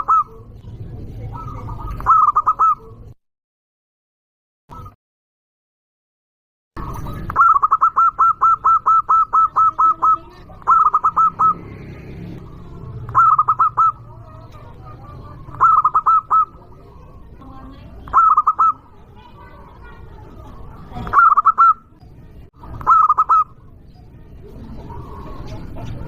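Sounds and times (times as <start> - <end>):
dove cooing: 0.0 - 0.6, 1.2 - 3.1, 6.8 - 22.0, 22.6 - 23.7, 24.4 - 26.0.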